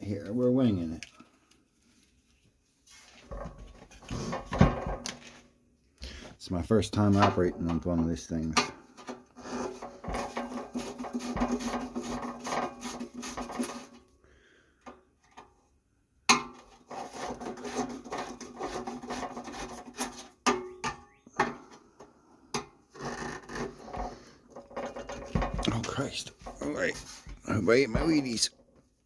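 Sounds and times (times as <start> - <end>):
metal scraping and grinding: 7.0 - 14.0, 16.5 - 20.6, 22.9 - 28.5.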